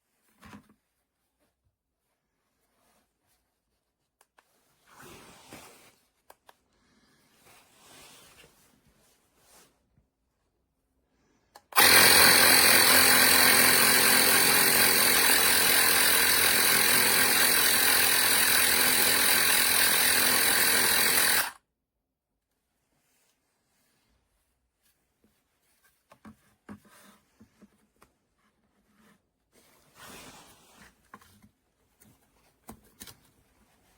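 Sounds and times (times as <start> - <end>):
faint rustling of handling: 0.0 - 11.5, 22.3 - 33.9
air compressor running: 11.8 - 21.6.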